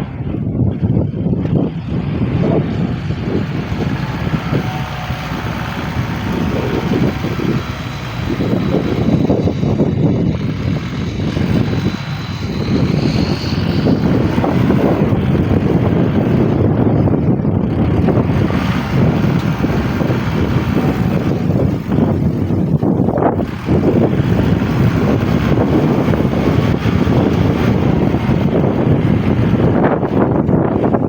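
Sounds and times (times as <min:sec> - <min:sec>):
strong wind on microphone: 0:00.0 - 0:31.0.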